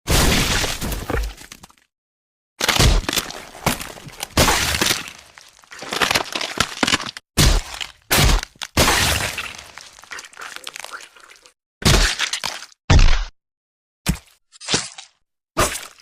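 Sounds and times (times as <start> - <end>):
cracking crunching hits: 2.6 - 10.9.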